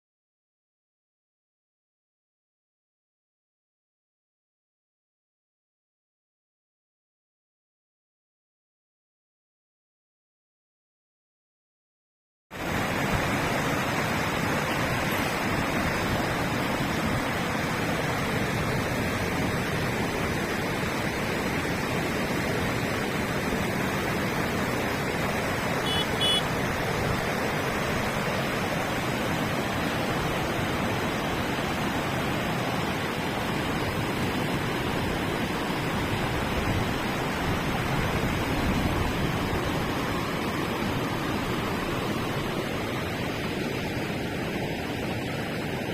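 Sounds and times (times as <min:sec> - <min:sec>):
river water rushing: 0:12.6 - 0:45.9.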